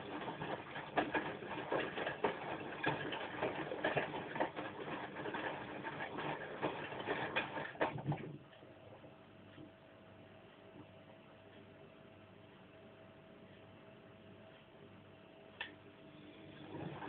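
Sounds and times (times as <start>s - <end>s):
washing machine drum tumbling: 0.0s - 8.5s, 16.6s - 17.0s
faint steady hum: 0.0s - 17.0s.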